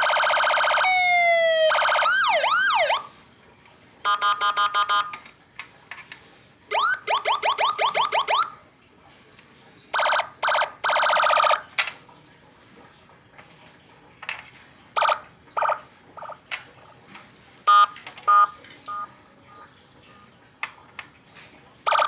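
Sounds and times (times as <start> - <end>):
electronic siren tones: 0.0 - 3.1, 6.7 - 8.6, 9.9 - 11.6.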